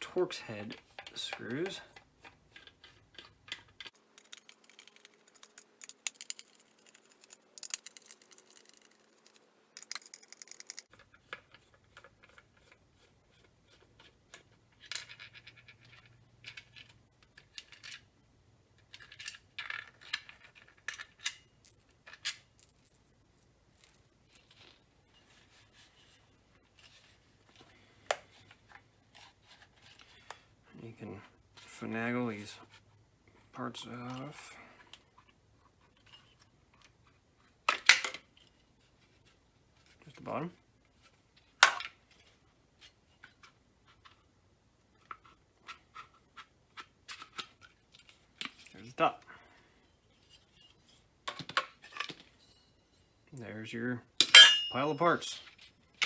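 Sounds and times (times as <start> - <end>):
small screws tapping: 2.6 - 10.9
screwdriver bit scratching screw heads: 4.2 - 10.9.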